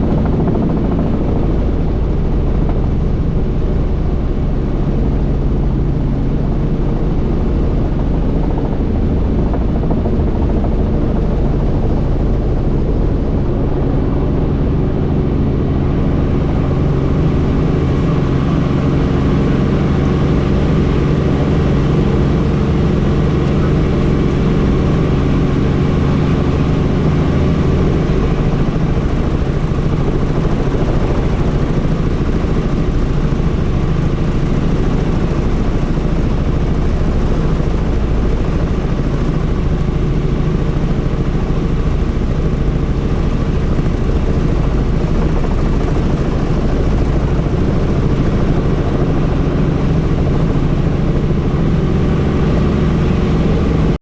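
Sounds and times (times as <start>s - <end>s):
helicopter engine and rotor: 0.0s - 54.0s.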